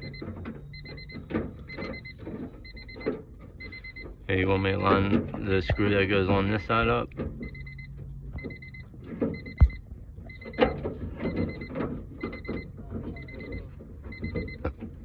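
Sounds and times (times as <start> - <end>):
rapid electronic beeping: 7.4 - 14.6.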